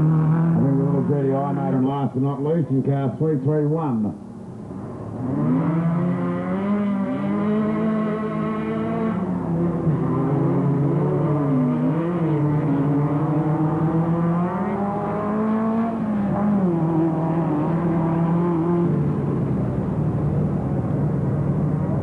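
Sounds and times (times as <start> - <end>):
race car engine revving: 0.0 - 1.8, 4.8 - 20.6.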